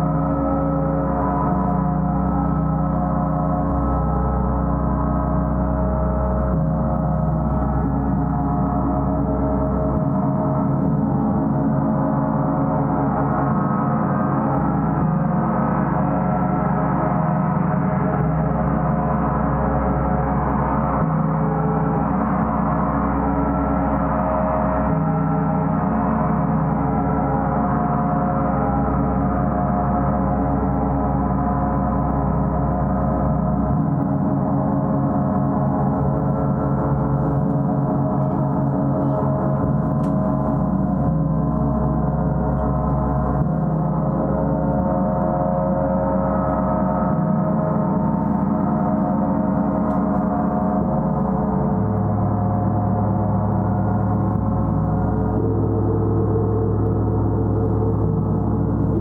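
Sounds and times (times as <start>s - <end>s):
gong ringing: 34.3s - 59.0s.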